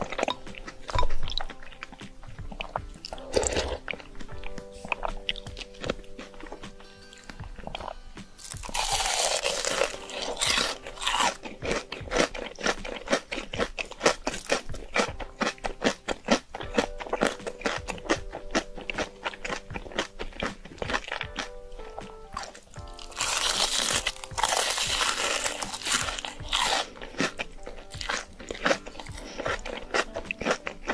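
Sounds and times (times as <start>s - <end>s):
crunchy chewing: 0.0s - 30.9s.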